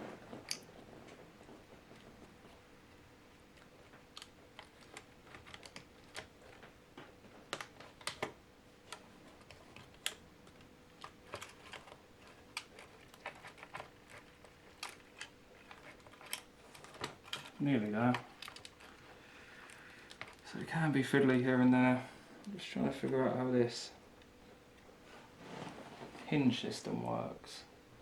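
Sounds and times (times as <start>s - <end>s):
laptop parts clicking and tapping: 3.6s - 19.0s.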